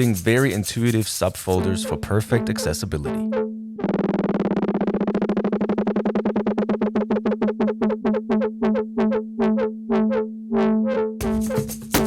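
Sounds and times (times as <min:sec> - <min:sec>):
stuttering synthesizer note: 0:01.5 - 0:11.6.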